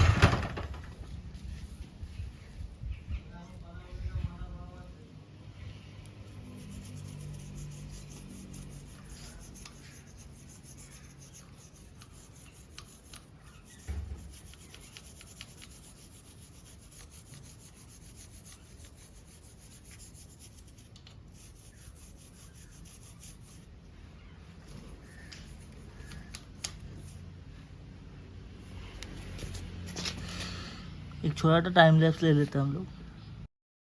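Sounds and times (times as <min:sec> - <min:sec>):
brush scrubbing a chain: 0:06.1 - 0:23.8, 0:24.6 - 0:27.8.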